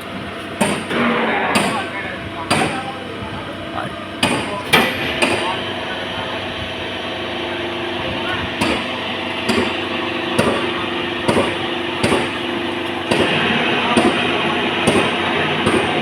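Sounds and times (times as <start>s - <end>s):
hydraulic press humming: 0.0s - 16.0s
loud metal clanks: 0.6s - 2.9s, 4.2s - 5.8s, 8.6s - 16.0s.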